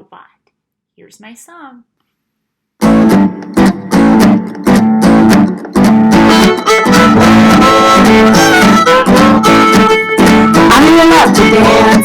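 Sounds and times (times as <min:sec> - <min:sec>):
upbeat children's dance music: 0:06.2 - 0:12.0.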